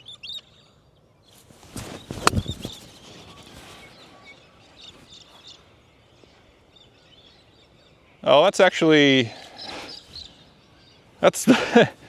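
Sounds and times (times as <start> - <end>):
birds chirping faintly: 0.0 - 12.0
golf club swish: 1.4 - 3.9
golf club striking ball: 1.8 - 2.8.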